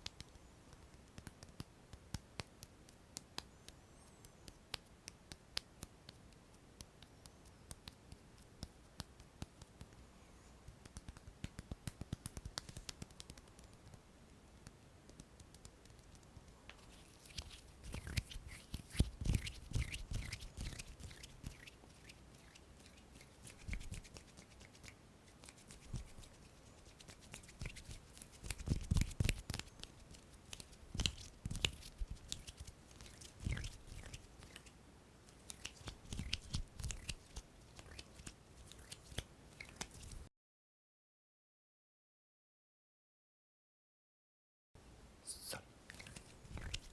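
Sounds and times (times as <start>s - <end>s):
crackly rubbing and scratching: 15.1s - 34.7s, 35.3s - 40.3s, 45.9s - 46.9s.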